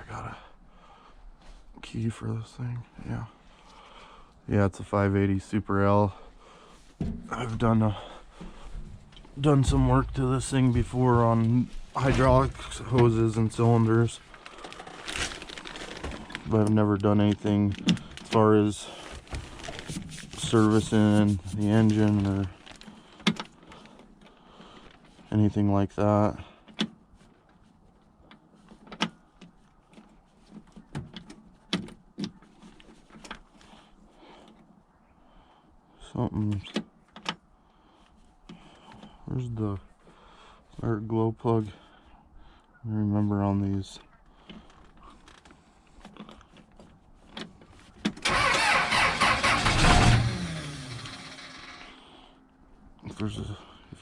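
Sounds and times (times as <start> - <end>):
handling clicks and knocks: 8.3 - 18.4, 28.2 - 33.5
starter winding down: 48.2 - 51.9
starter cranking diesel engine: 48.2 - 52.0.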